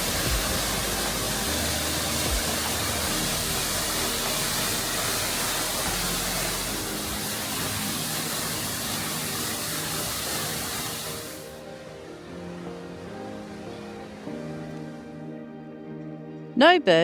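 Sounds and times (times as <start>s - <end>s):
waterfall roaring: 0.0s - 11.6s.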